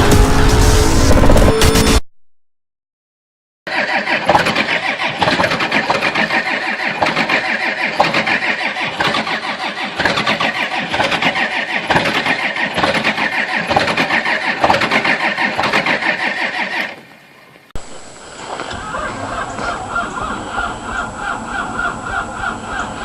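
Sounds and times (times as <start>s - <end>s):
large engine running unevenly: 3.7s - 17.1s, 17.8s - 23.0s
steady high whine: 17.8s - 23.0s.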